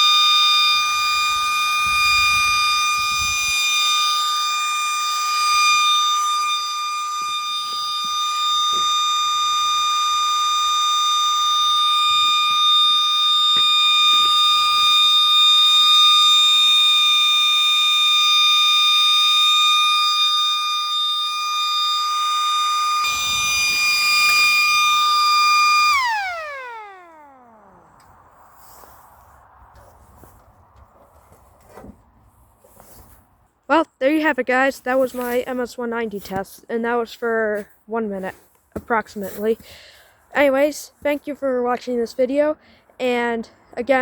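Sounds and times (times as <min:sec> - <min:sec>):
electric motor siren wailing: 0:00.0 - 0:29.0.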